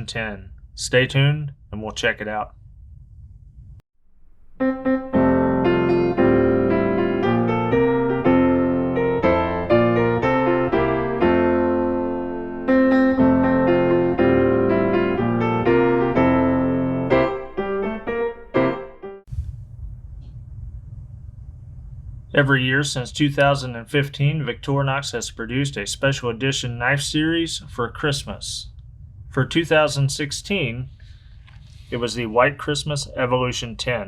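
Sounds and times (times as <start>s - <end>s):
piano music: 4.3s - 19.3s.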